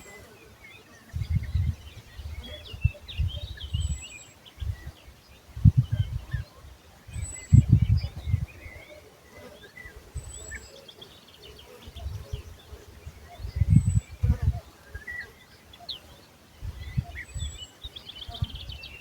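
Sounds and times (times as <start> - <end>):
birds chirping: 0.0 - 19.0
wind buffeting microphone: 1.1 - 8.8, 11.9 - 15.0, 16.5 - 19.0.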